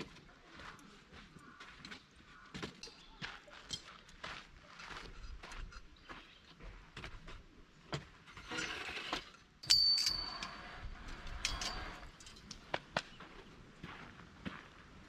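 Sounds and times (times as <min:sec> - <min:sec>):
objects clicking and knocking: 0:08.4 - 0:13.0
sharp metallic clink: 0:09.6 - 0:12.7.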